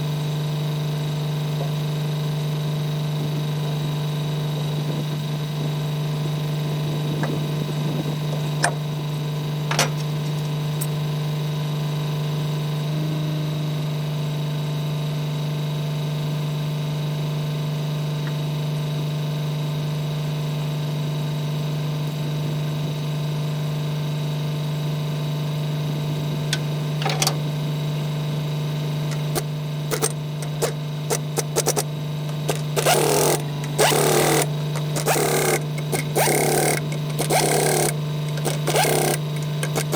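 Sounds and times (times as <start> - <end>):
machine hum: 25.8 - 39.9
sharp clicks: 29.1 - 39.9.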